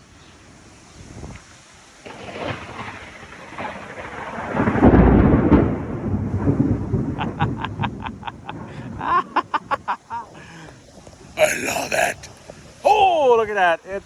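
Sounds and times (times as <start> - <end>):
heavy rain: 11.4 - 13.2.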